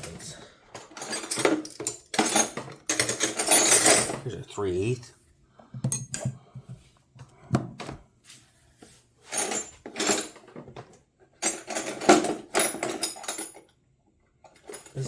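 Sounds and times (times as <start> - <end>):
metal wrenches clinking: 0.0 - 4.2.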